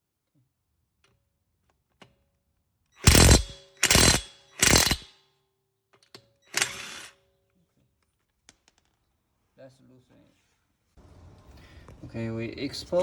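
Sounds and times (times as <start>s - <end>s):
impact wrench hammering: 3.0s - 5.2s, 6.6s - 7.1s.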